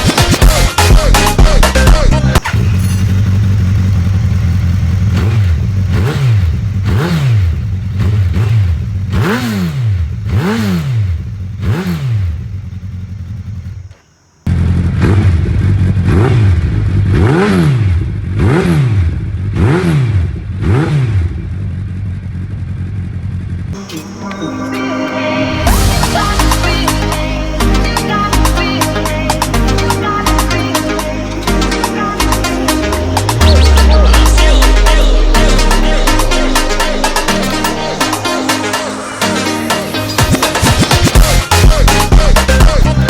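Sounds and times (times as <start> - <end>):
motorcycle engine idling and revving: 0.0 - 43.0.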